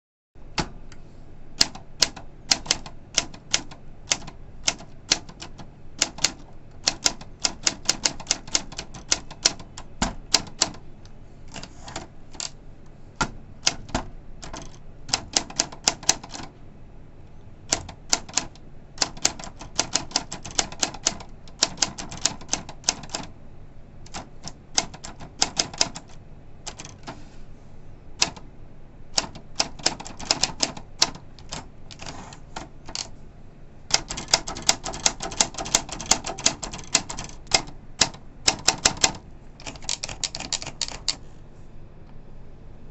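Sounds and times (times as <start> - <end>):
manual typewriter typing: 1.6 - 10.9, 11.5 - 12.6, 13.2 - 16.5, 17.7 - 23.3, 24.0 - 27.2, 28.2 - 28.4, 29.1 - 33.1, 33.9 - 41.2.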